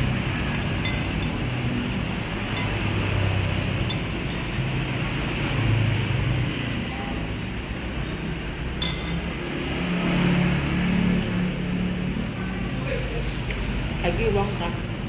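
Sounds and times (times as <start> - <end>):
road traffic rumble: 0.0 - 15.0
tableware clink: 0.4 - 1.6, 2.5 - 3.1, 3.8 - 4.7, 8.8 - 9.4.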